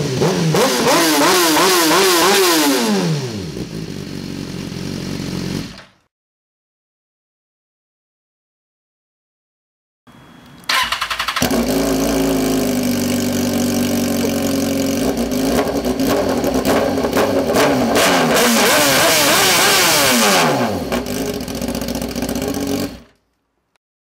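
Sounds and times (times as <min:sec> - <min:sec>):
motorcycle engine revving: 0:00.0 - 0:06.0, 0:10.6 - 0:23.2.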